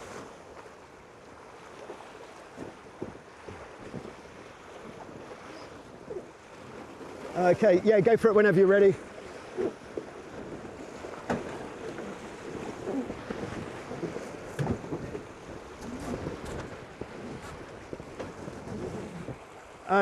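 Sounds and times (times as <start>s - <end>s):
water rushing past boat: 0.0s - 20.0s
knocks and clicks from boat: 1.5s - 8.2s, 9.0s - 20.0s
wind buffeting microphone: 8.9s - 20.0s.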